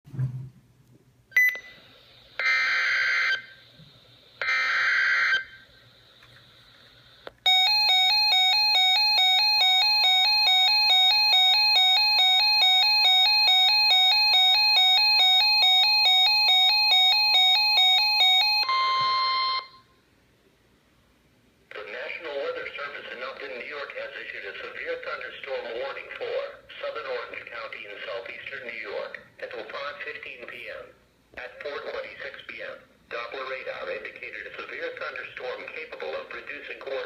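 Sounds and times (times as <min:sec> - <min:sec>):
steady high tone: 0:07.5 - 0:20.0.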